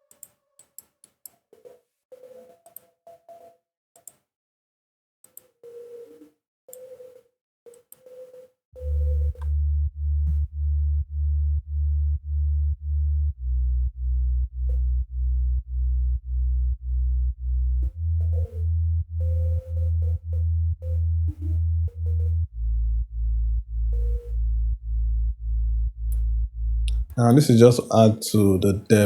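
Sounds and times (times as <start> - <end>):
low synth bass pulse: 8.8 - 27.7.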